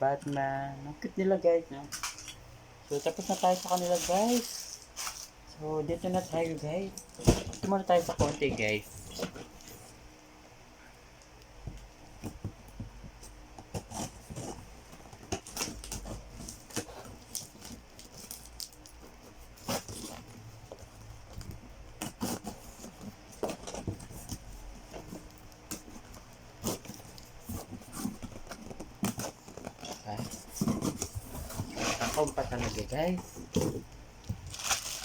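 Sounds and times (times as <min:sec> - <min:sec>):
toy packaging clicks and crackles: 0:01.9 - 0:05.3, 0:15.3 - 0:19.0, 0:34.4 - 0:35.0.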